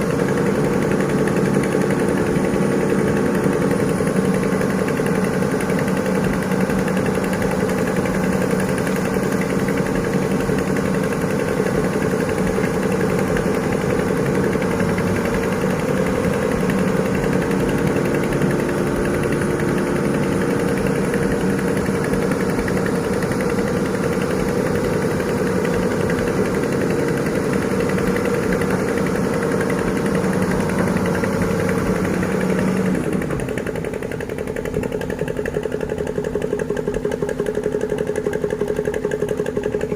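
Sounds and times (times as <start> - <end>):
heavy diesel engine running: 0.0 - 39.9.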